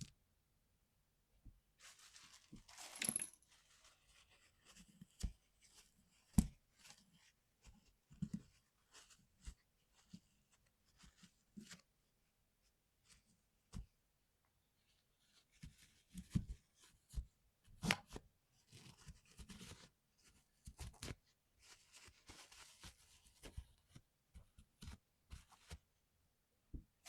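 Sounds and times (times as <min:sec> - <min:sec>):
scraping and rustling: 0:01.8 - 0:04.8.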